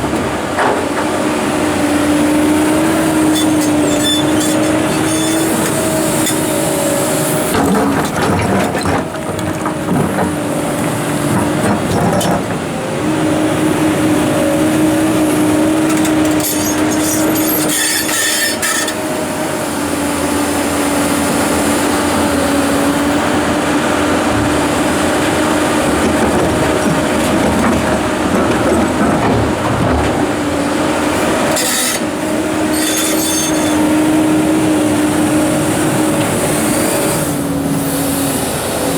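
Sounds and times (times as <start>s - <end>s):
excavator engine whining: 0.0s - 38.9s
rocks scraping against steel: 3.3s - 6.4s.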